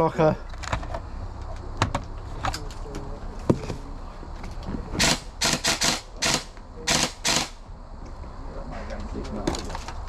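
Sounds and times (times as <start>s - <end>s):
airsoft gun shots: 5.0s - 7.6s
gun clicks: 5.0s - 7.6s.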